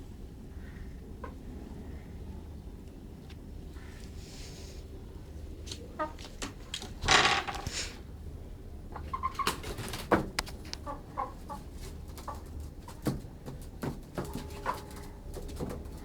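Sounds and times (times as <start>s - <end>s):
chickens clucking: 1.1s - 1.5s, 5.6s - 7.0s, 8.8s - 16.0s.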